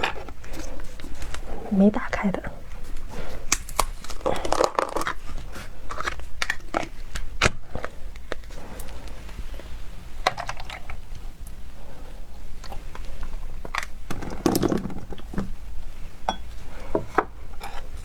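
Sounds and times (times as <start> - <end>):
plastic packaging crinkling and tearing: 2.9 - 9.1.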